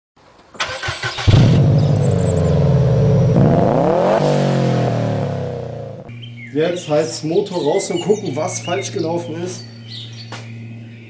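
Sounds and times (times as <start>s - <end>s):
car starter cranking: 0.6s - 2.4s
car engine idling and revving: 0.8s - 6.5s.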